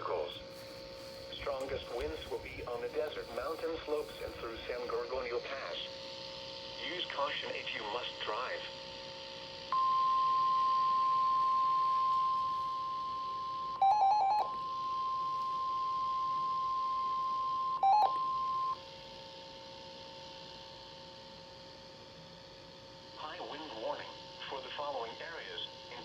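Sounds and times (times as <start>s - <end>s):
steady alarm tone: 0.0s - 6.7s, 8.7s - 22.0s
rapid beeping: 0.3s - 5.0s.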